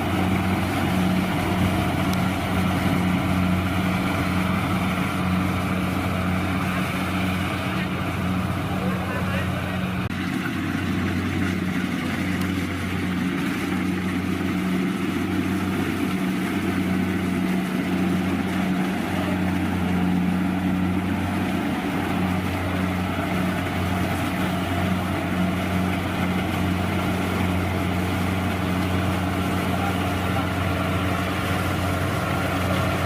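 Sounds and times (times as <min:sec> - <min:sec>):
combine harvester engine hum: 0:00.0 - 0:33.0.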